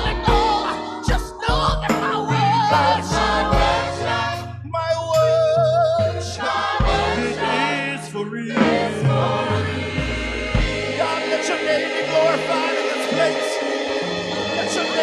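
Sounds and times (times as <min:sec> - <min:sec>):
bass and drums: 0:00.0 - 0:02.0, 0:03.4 - 0:07.4, 0:08.6 - 0:11.0
gospel singers with vibrato: 0:00.0 - 0:15.0.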